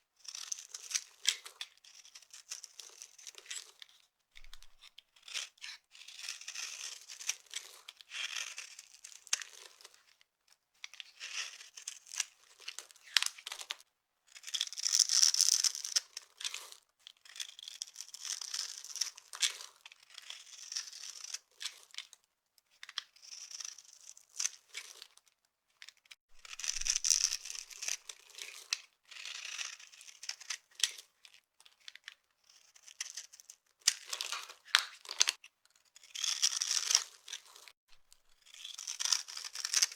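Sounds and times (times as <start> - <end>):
dry soap crunching: 6.0 - 9.8, 26.4 - 28.4, 36.0 - 39.9.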